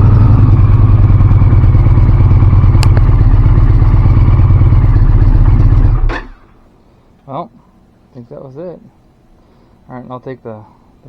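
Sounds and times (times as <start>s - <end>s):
motorcycle engine idling: 0.0s - 6.6s
sharp click: 2.8s - 3.1s.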